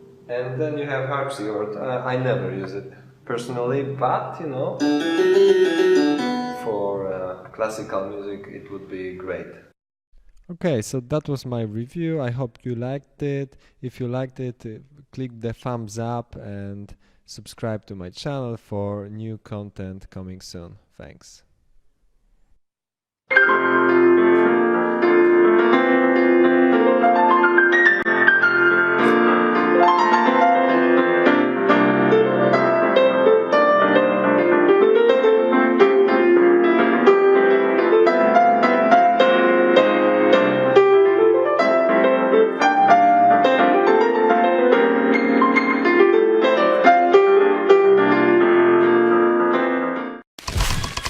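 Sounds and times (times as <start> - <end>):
solo piano music: 4.8 - 7.1, 23.3 - 50.2.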